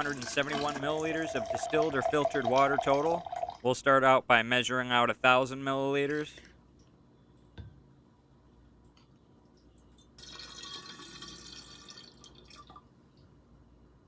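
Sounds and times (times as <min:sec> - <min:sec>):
water pouring into a container: 0:00.0 - 0:03.8, 0:09.9 - 0:12.9.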